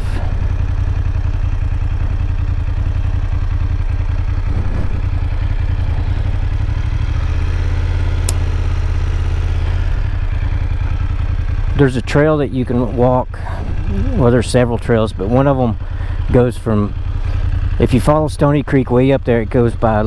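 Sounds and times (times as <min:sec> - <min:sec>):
motorcycle engine idling: 0:00.0 - 0:20.0.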